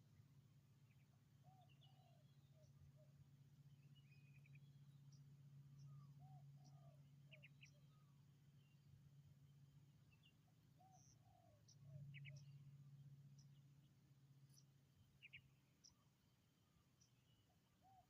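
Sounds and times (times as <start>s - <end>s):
steady low hum: 0.0s - 18.0s
small birds chirping: 10.1s - 12.6s, 14.5s - 16.2s.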